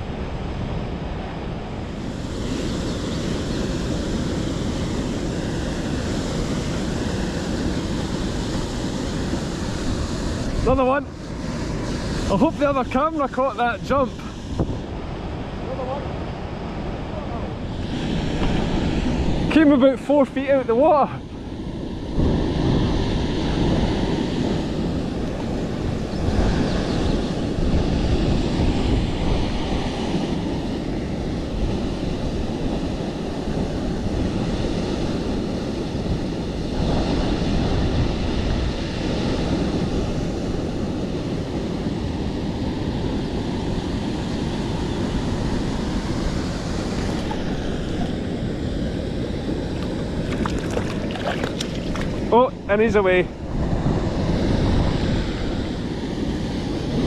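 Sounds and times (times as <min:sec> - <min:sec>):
wind on microphone: 0:00.0 - 0:20.1, 0:20.7 - 0:57.0
waterfall and river rushing: 0:49.6 - 0:53.2.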